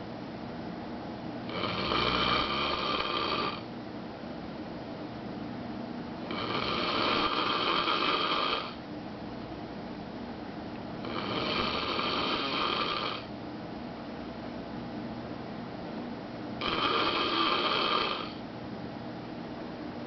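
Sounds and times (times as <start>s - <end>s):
man snoring loudly: 1.5s - 3.6s, 6.3s - 8.8s, 11.0s - 13.3s, 16.6s - 18.4s.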